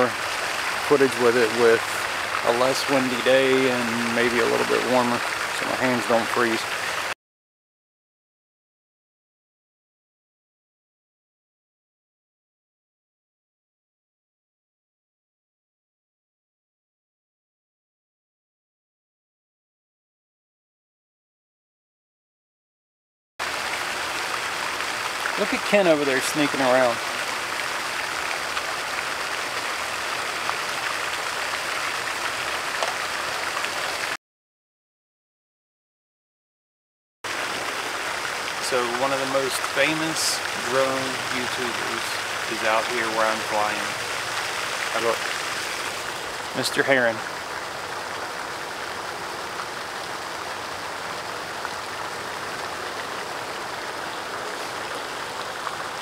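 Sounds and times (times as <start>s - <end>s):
steady outdoor rushing hiss: 0.0s - 7.1s, 23.4s - 34.1s, 37.3s - 56.0s.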